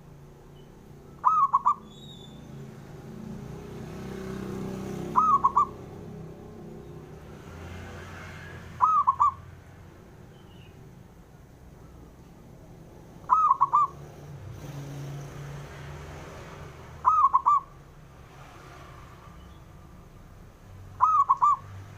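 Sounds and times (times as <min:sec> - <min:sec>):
dove cooing: 0:01.2 - 0:01.8, 0:04.8 - 0:06.1, 0:08.7 - 0:09.5, 0:13.2 - 0:14.0, 0:17.0 - 0:17.8, 0:21.0 - 0:21.7.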